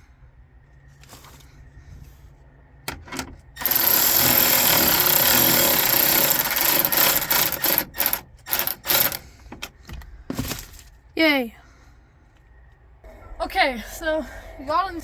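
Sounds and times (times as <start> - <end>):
power drill driving screw: 3.6 - 9.2.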